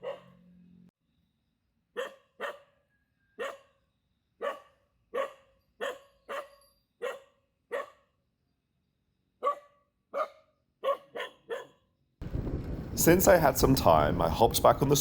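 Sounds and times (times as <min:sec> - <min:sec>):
small dog barking: 0:00.0 - 0:00.4, 0:02.0 - 0:02.8, 0:03.4 - 0:03.8, 0:04.4 - 0:08.1, 0:09.4 - 0:11.9.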